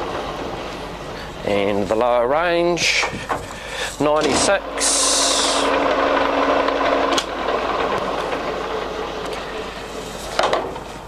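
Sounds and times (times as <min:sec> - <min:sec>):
lathe headstock whine: 0:02.8 - 0:11.0
lathe spindle winding down: 0:02.9 - 0:11.0.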